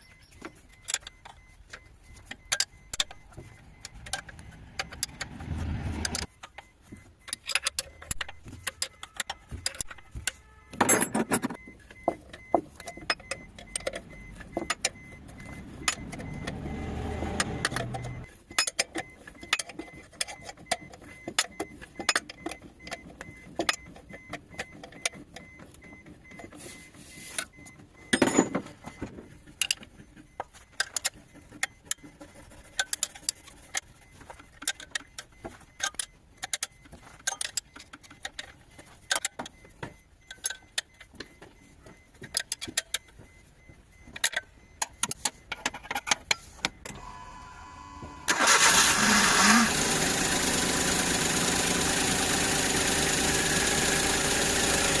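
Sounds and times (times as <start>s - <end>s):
car engine starting and running: 0.6s - 6.6s, 11.3s - 26.4s, 43.2s - 55.0s.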